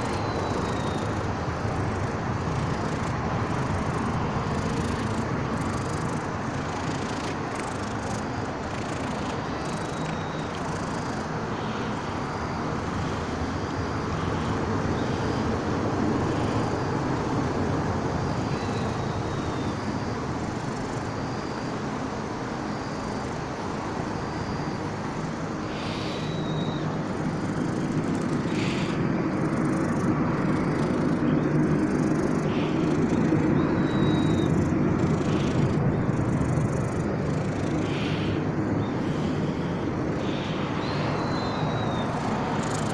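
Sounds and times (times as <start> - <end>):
outdoor background noise: 0.0 - 42.9
faint high chirps: 32.5 - 38.2.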